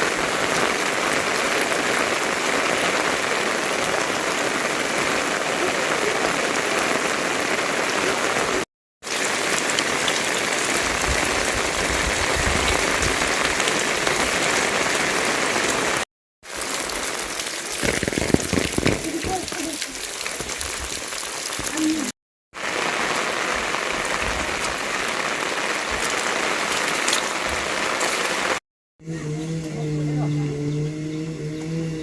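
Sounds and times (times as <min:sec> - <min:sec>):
steady rain: 0:00.0 - 0:28.6.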